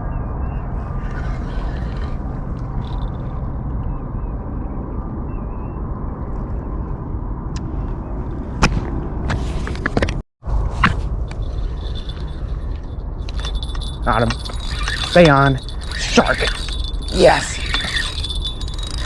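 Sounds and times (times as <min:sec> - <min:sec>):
low outdoor rumble: 0:00.0 - 0:09.6, 0:10.4 - 0:19.0
clicks and rattles: 0:10.9 - 0:19.0.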